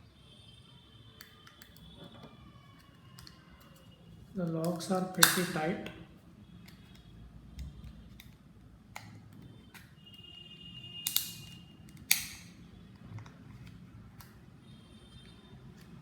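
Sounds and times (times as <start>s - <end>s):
small plastic clicks: 1.2s - 6.0s, 11.1s - 14.4s.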